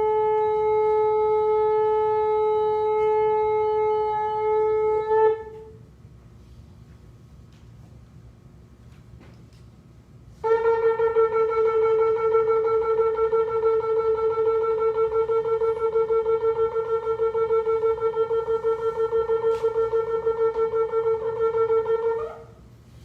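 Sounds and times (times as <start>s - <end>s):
shofar blast: 0.0s - 5.9s, 10.3s - 22.6s.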